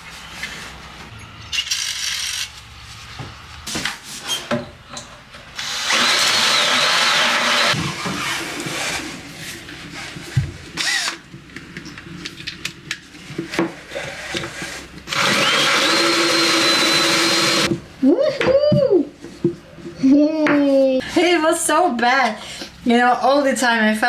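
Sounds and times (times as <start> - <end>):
power tool whining: 5.6 - 9.2, 15.1 - 17.7.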